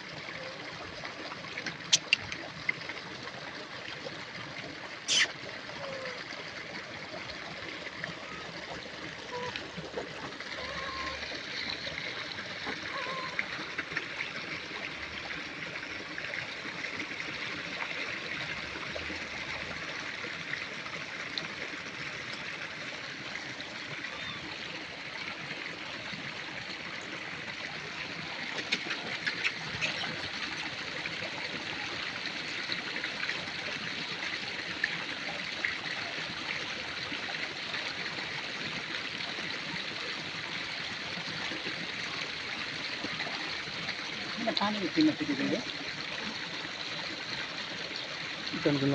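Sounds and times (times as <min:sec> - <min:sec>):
running water: 0:00.0 - 0:48.9
faint clicks: 0:01.6 - 0:02.5.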